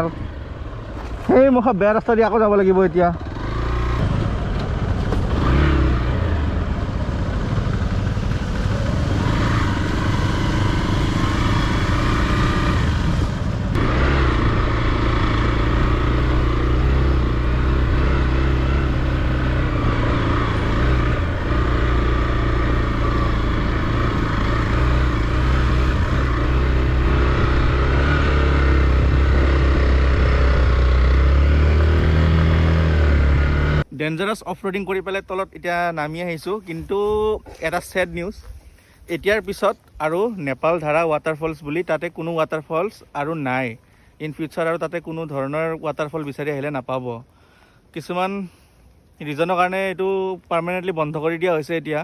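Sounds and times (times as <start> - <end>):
motorcycle engine running: 2.7 - 33.8.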